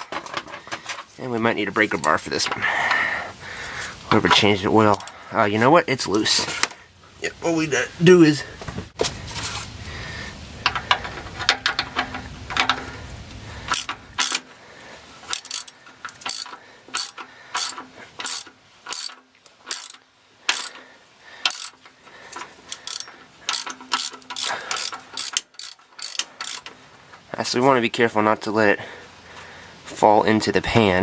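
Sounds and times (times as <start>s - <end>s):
socket ratchet clicking: 4.9s - 5.2s, 13.7s - 14.4s, 15.3s - 20.8s, 21.4s - 21.8s, 22.7s - 26.7s.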